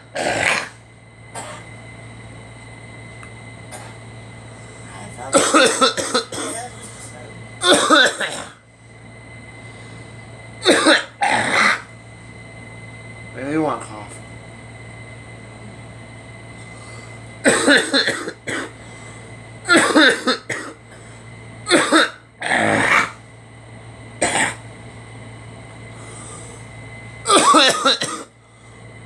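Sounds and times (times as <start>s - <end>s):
steady low hum: 0.0s - 29.0s
people coughing: 0.1s - 1.7s, 5.2s - 8.6s, 10.6s - 11.9s, 17.4s - 18.8s, 19.7s - 20.9s, 21.7s - 23.2s, 24.2s - 24.6s, 27.2s - 28.4s.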